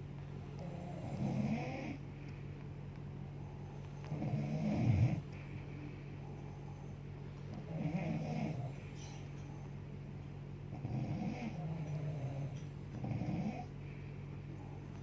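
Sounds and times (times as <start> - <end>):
steady low hum: 0.0 - 15.0
woman snoring: 0.6 - 2.0, 4.1 - 5.2, 7.6 - 8.8, 10.8 - 13.7.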